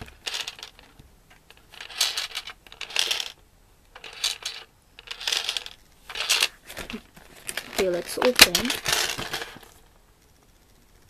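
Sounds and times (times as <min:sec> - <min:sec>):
toy game contents rattling: 0:00.0 - 0:00.9, 0:01.5 - 0:03.4, 0:04.0 - 0:09.8.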